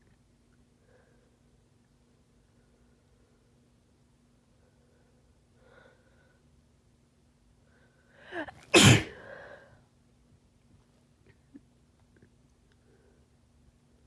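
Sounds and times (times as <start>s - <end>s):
person sneezing: 8.4s - 9.3s.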